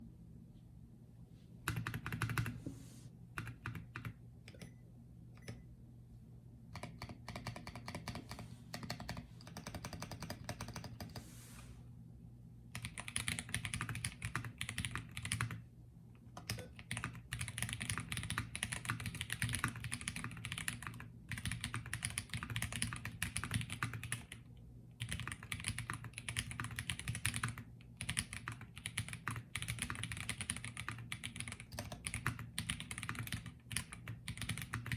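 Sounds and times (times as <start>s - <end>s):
faint low hum: 0.0s - 34.9s
mechanical keyboard typing: 1.7s - 2.6s, 3.4s - 4.7s, 6.7s - 11.2s, 12.7s - 15.6s, 16.4s - 24.4s, 25.0s - 34.9s.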